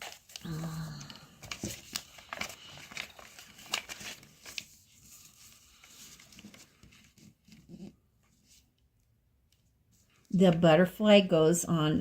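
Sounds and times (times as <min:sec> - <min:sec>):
paper and plastic wrappers crinkling: 0:00.0 - 0:07.6.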